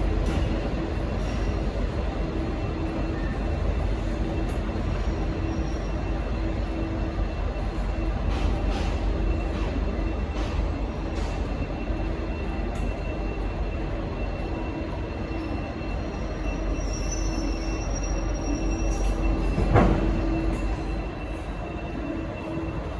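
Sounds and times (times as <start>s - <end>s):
diesel locomotive rumbling: 0.0s - 22.9s
faint high squeal: 15.4s - 22.9s.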